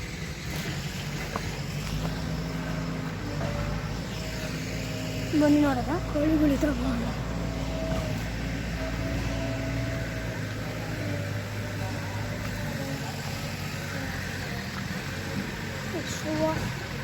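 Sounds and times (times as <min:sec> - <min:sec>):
engine running with low hum: 0:00.0 - 0:17.0.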